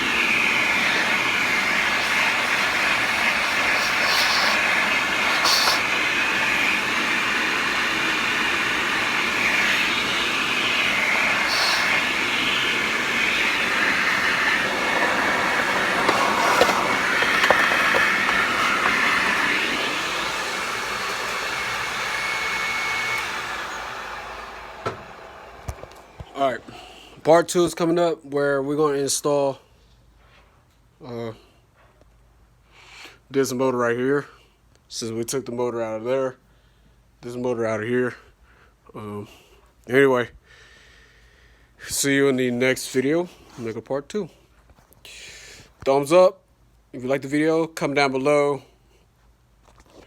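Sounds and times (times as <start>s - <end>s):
vacuum cleaner motor running: 0.0s - 27.9s.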